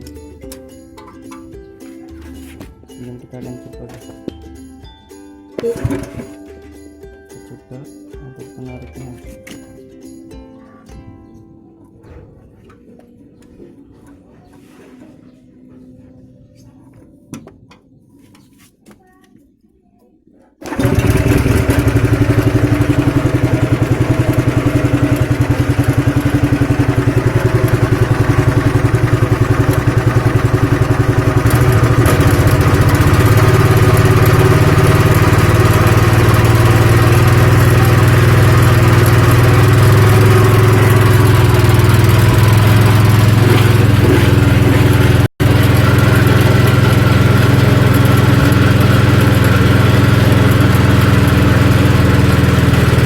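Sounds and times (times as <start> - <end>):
small petrol engine running: 5.6 - 6.4, 20.6 - 53.0.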